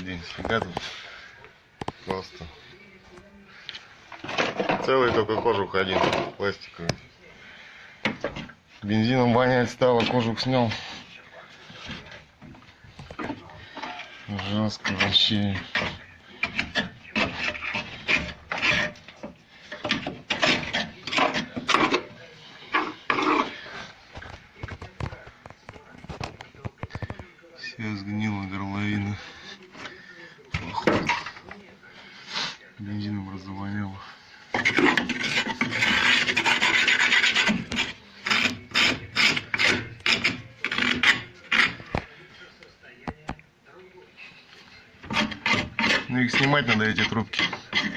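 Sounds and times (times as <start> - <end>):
hand scraping corroded metal: 3.6 - 6.9, 8.0 - 27.2, 34.4 - 42.1, 45.0 - 47.9.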